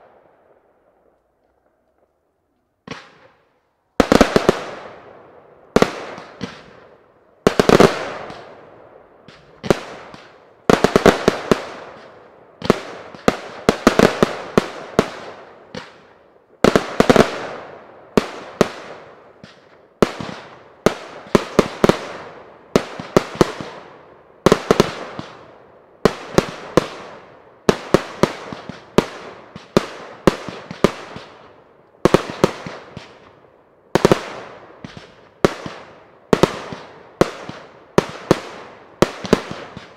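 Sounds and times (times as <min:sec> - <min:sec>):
fireworks banging: 0:02.8 - 0:05.0, 0:05.7 - 0:08.6.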